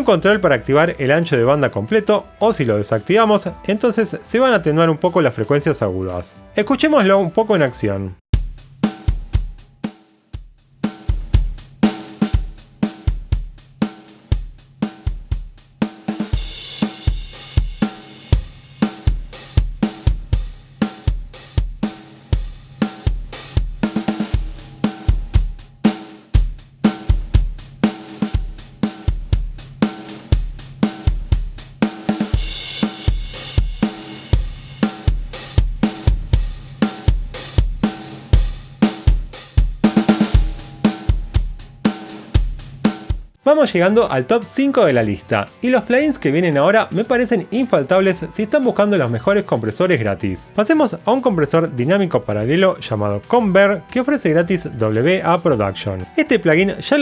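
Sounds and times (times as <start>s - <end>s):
drum kit groove: 8.3s - 43.4s, 50.7s - 57.0s.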